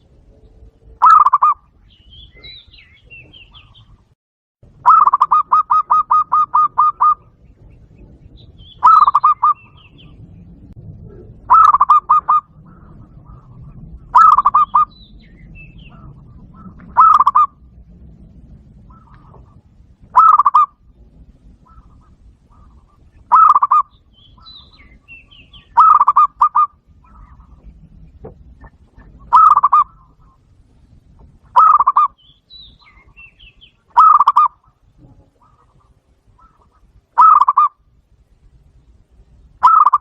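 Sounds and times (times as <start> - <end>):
bird chirps: 0.4 - 4.1, 4.8 - 17.6, 18.9 - 20.8, 21.6 - 37.8, 39.6 - 40.0
dove cooing: 1.0 - 1.6, 4.8 - 7.4, 8.5 - 10.2, 11.0 - 15.0, 15.7 - 17.6, 18.8 - 20.8, 21.4 - 30.4, 31.5 - 32.2, 32.8 - 37.8, 39.6 - 40.0.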